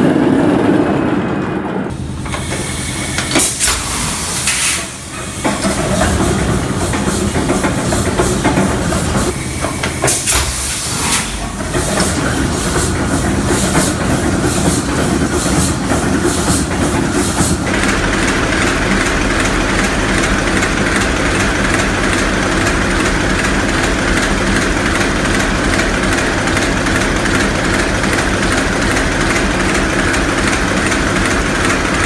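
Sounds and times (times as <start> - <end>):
large diesel engine running: 0.0 - 32.0
rhythmic clatter: 11.4 - 32.0.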